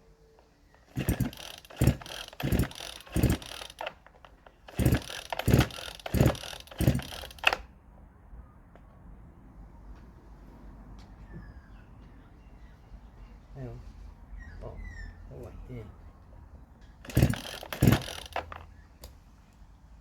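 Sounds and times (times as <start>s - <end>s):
chainsaw starter cord yanked: 0.7s - 7.7s, 17.0s - 18.7s.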